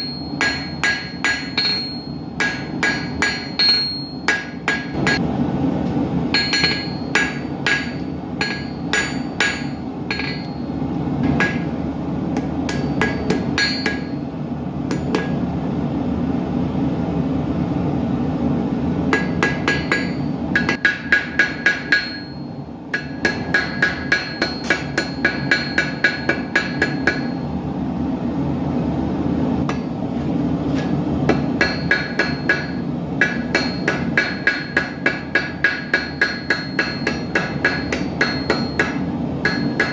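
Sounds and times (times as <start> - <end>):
hammer striking steel on anvil: 0.0 - 5.3, 6.3 - 11.8, 12.4 - 14.2, 14.9 - 15.4, 19.1 - 27.5, 29.7 - 30.0, 30.8 - 39.9.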